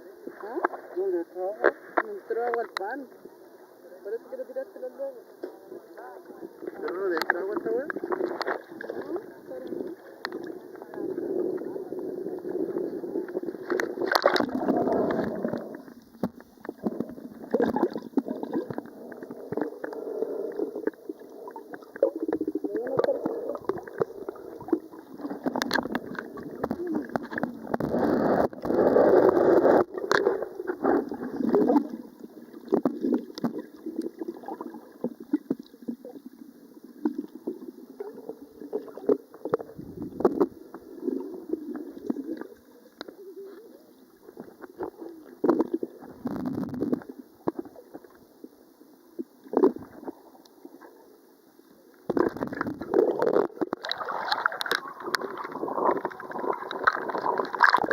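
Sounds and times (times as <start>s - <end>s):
water sloshing and splashing: 6.6s - 11.8s, 12.4s - 36.3s, 52.1s - 57.9s.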